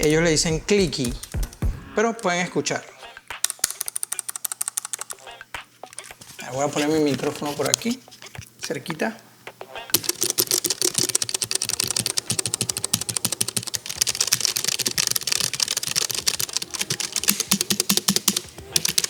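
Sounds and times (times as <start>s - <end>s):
mechanical keyboard key clacks: 0.0s - 1.7s, 3.4s - 5.2s, 9.9s - 19.0s.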